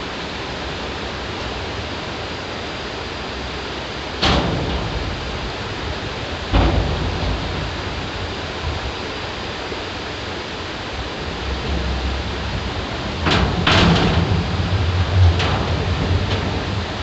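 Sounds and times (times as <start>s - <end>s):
steady flowing noise: 0.0s - 17.0s
low rumble: 4.2s - 17.0s
sharp clunks: 11.4s - 17.0s.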